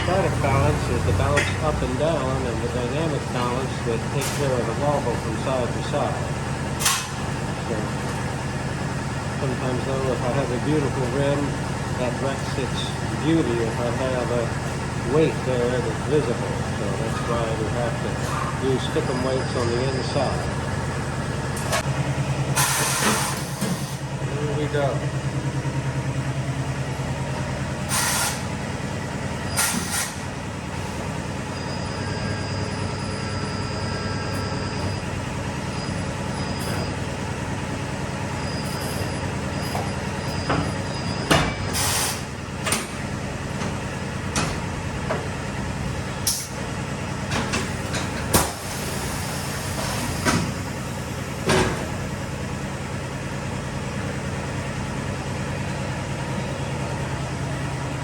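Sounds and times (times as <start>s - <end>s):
machinery hum: 0.0s - 58.0s
air hiss bursts: 22.6s - 24.0s, 27.9s - 28.5s.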